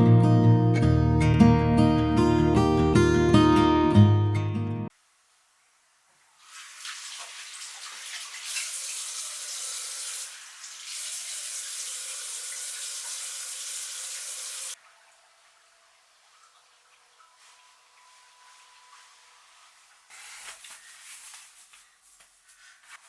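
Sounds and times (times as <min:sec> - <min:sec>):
water running: 0:06.3 - 0:21.8.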